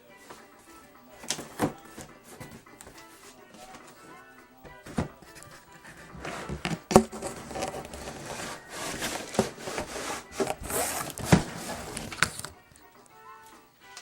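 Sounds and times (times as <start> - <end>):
cardboard scraping and rubbing: 4.7 - 12.6.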